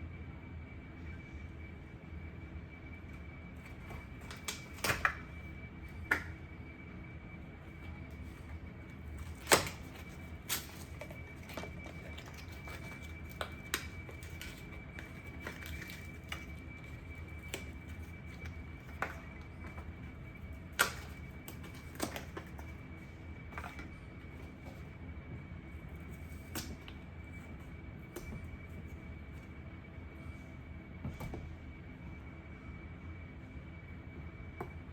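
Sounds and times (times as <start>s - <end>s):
steady low hum: 0.0s - 34.9s
packaging clicks and taps: 9.2s - 19.8s.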